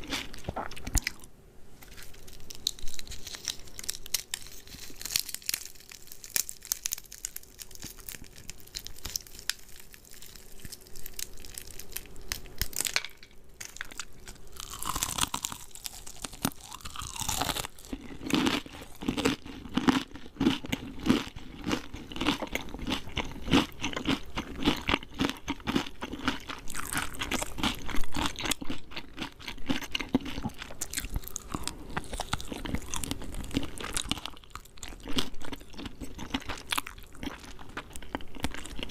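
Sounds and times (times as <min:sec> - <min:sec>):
crunching and chewing fried chicken: 0:00.0 - 0:38.9.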